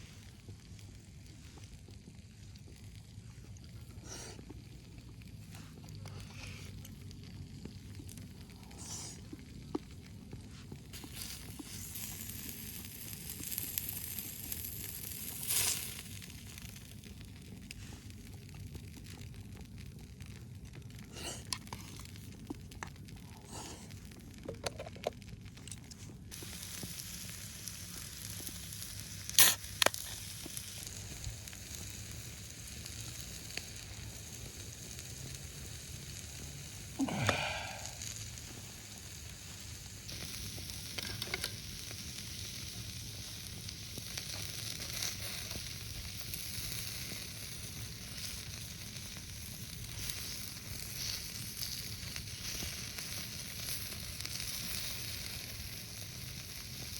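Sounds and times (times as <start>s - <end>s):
steak sizzling on griddle: 10.8s - 20.3s, 26.3s - 56.9s.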